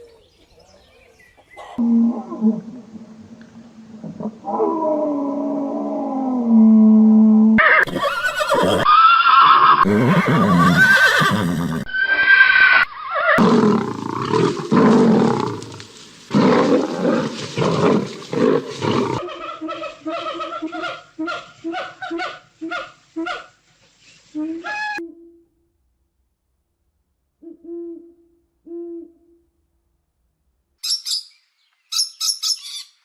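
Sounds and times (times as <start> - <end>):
animal cries and calls: 7.6 - 14.4, 18.8 - 23.5.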